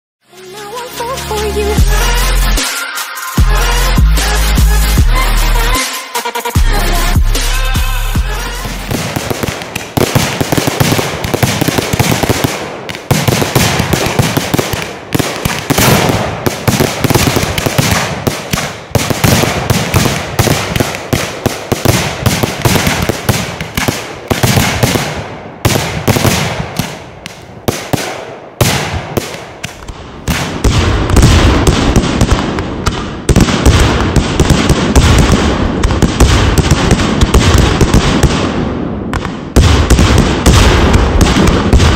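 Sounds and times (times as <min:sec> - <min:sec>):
fireworks bangs and crackles: 0:06.6 - 0:41.9.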